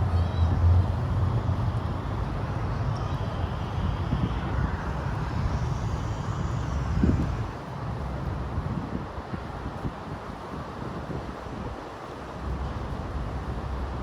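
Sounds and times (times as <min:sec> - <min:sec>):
traffic engine rumble: 0:00.0 - 0:08.7.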